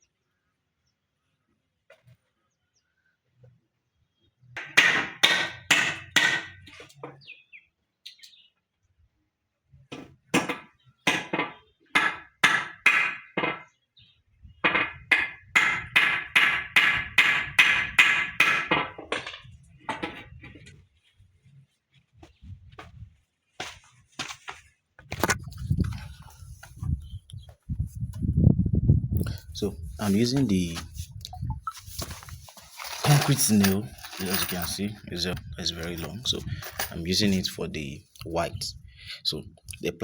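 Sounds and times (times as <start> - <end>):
hammer driving nails into wood: 4.6 - 6.7, 10.3 - 13.6, 14.7 - 19.0.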